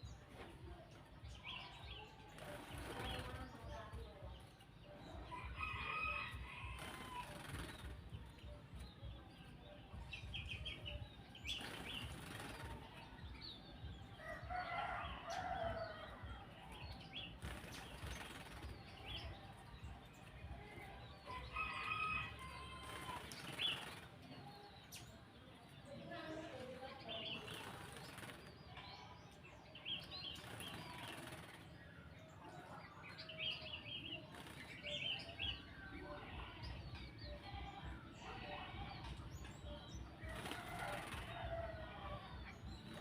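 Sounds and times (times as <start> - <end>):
wing fluttering and splashing: 2.3 - 3.5, 5.6 - 8.2, 11.4 - 13.0, 17.0 - 19.4, 21.5 - 24.2, 27.3 - 28.5, 30.2 - 31.8, 40.2 - 41.7.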